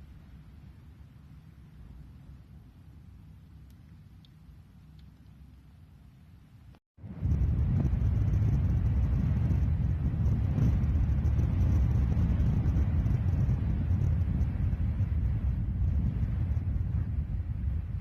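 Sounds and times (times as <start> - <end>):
wind buffeting microphone: 7.0 - 18.0.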